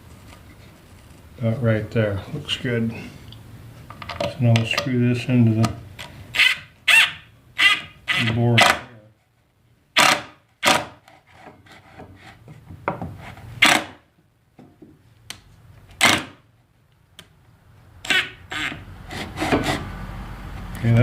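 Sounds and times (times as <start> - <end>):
wood scraping on wood: 10.8 - 14.0, 18.1 - 21.0.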